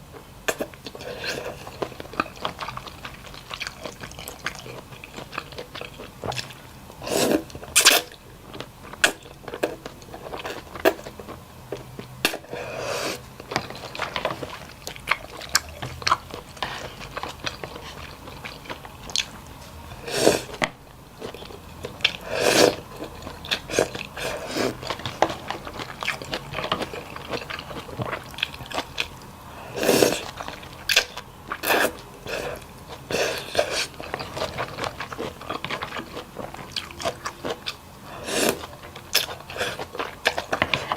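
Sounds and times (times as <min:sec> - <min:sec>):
wet chewing and biting: 0:00.5 - 0:06.6, 0:13.4 - 0:19.4, 0:20.5 - 0:40.9.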